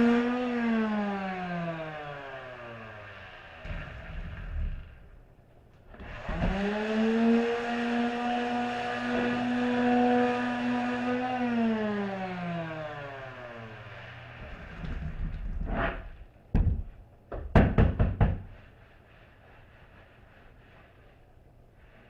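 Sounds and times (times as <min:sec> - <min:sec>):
power tool motor spinning: 0:00.0 - 0:05.1, 0:05.9 - 0:16.0.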